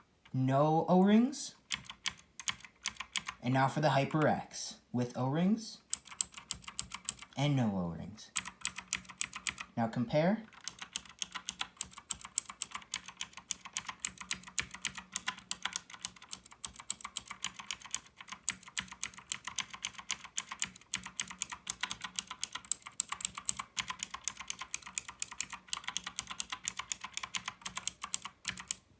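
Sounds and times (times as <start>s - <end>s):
mechanical keyboard typing: 1.7s - 3.4s, 5.9s - 7.4s, 8.4s - 9.8s, 10.5s - 28.9s.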